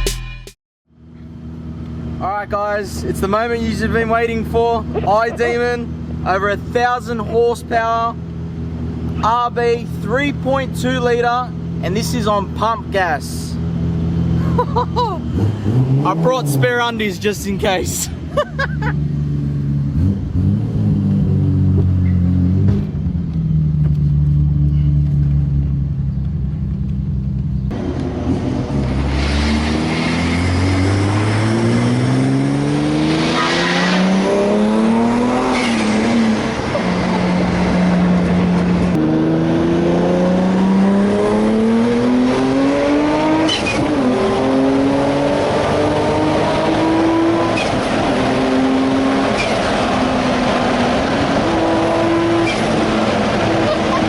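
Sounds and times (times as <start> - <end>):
car engine accelerating through gears: 13.8 - 16.7, 18.6 - 54.0.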